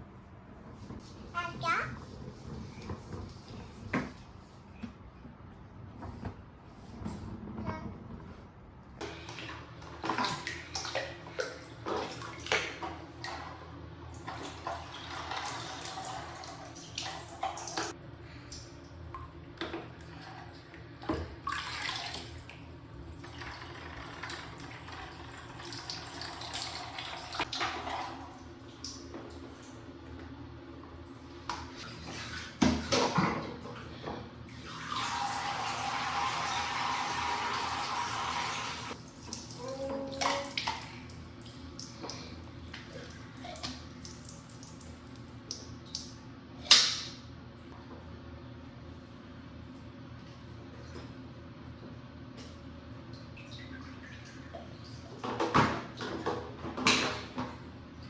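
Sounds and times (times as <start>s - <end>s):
water splashing and sloshing: 0.0s - 48.0s, 49.6s - 58.0s
running water: 34.6s - 45.7s.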